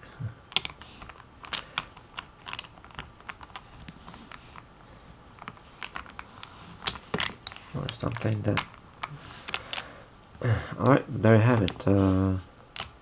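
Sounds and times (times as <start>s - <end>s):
plastic puzzle pieces clicking: 0.5s - 4.6s, 5.4s - 9.9s, 12.7s - 13.0s.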